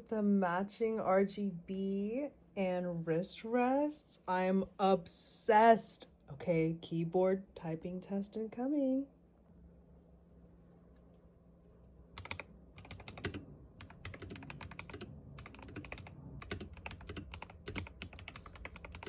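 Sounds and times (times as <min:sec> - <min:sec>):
mechanical keyboard keystroke clicks: 0:12.2 - 0:19.0.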